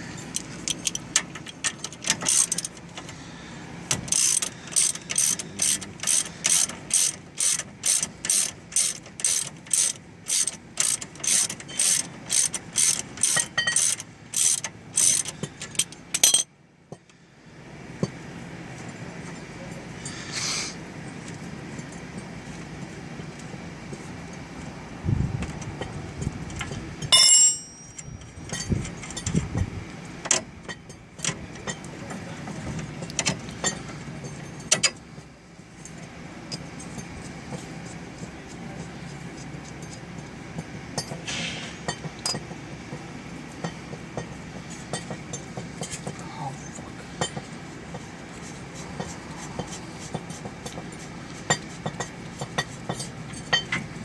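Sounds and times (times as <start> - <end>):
tools and metal parts clinking: 0.2 - 3.1, 3.9 - 17.0, 25.8 - 29.5, 30.2 - 35.0, 39.6 - 41.3, 41.9 - 42.6, 49.0 - 54.0
ringing metal clank: 13.2 - 14.0, 16.2 - 16.5, 27.0 - 29.4.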